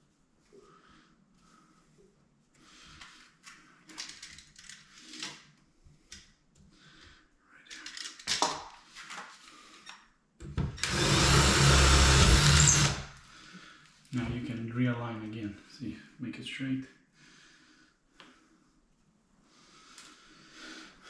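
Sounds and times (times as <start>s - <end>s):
power drill drilling: 10.8s - 13.2s.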